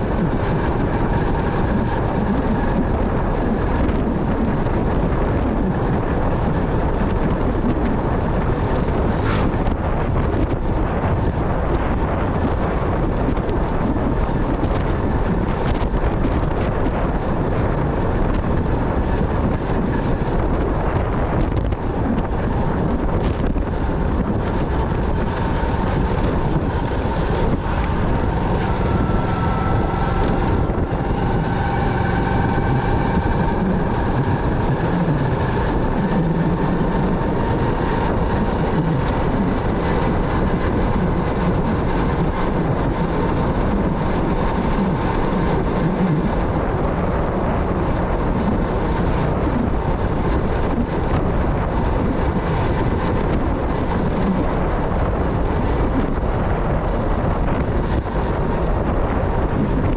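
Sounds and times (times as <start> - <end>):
motorcycle running: 0.0 - 59.9
wind buffeting microphone: 0.0 - 59.9
faint high whines: 25.5 - 37.1.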